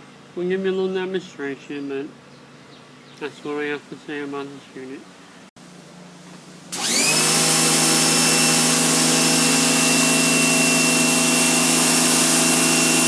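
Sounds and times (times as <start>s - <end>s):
pressure washer hissing: 6.7s - 13.0s
pressure washer motor whine: 6.7s - 13.0s.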